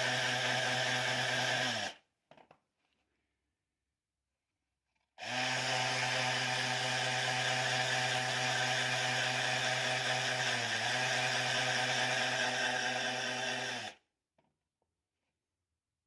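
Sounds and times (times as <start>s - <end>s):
electric power tool motor hum: 0.0s - 2.0s, 5.2s - 14.0s.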